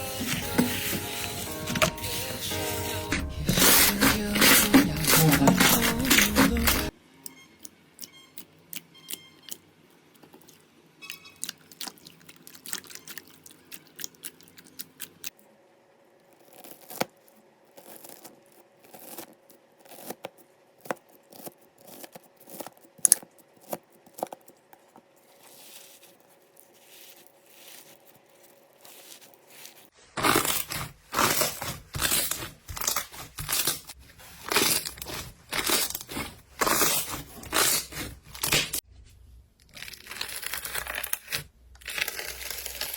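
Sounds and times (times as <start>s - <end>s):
slime crunching squeezes: 25.4s - 38.8s, 39.6s - 42.9s
slime crackling and popping: 34.4s - 38.8s, 39.6s - 42.9s.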